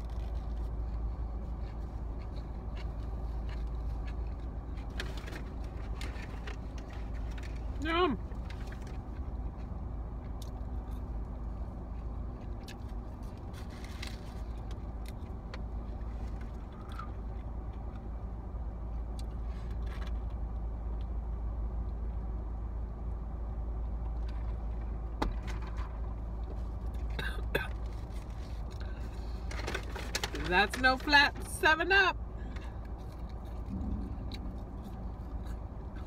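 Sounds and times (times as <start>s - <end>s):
car cabin rumble: 24.0s - 36.0s.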